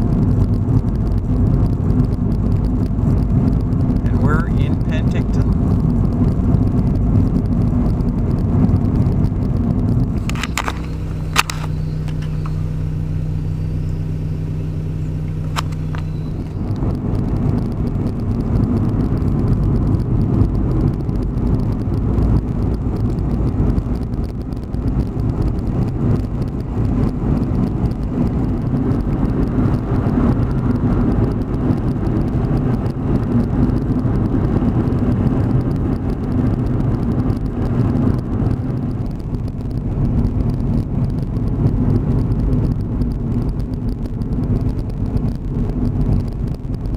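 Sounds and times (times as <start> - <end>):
engine humming: 0.0 - 46.9
vehicle road noise: 0.0 - 46.9
sharp click: 10.2 - 12.6, 15.2 - 16.6.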